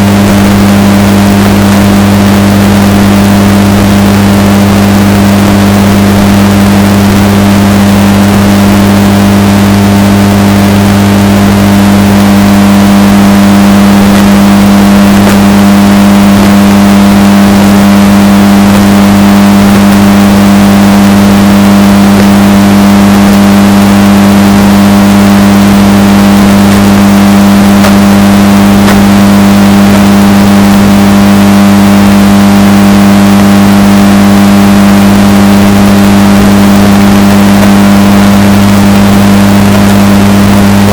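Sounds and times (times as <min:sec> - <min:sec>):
washing machine humming: 0:00.0 - 0:40.9.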